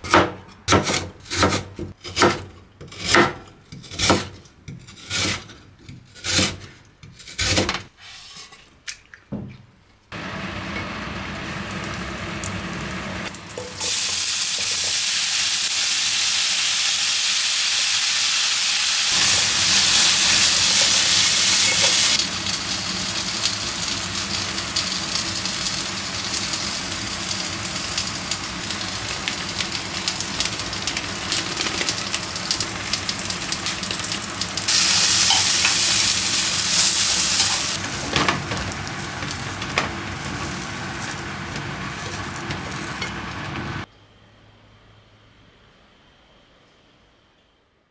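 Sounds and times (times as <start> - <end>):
food frying in hot oil: 10.2 - 43.9.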